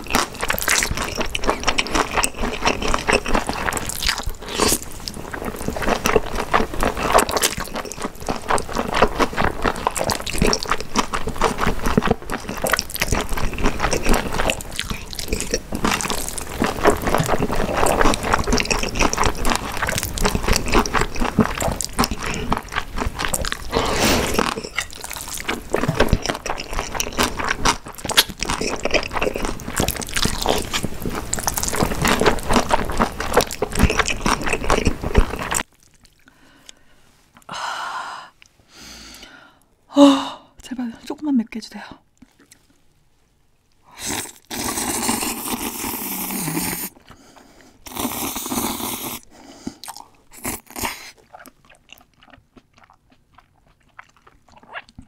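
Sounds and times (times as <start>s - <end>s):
person chewing and biting: 0.0s - 37.5s, 44.0s - 55.0s
wet mouth clicks: 9.9s - 36.8s.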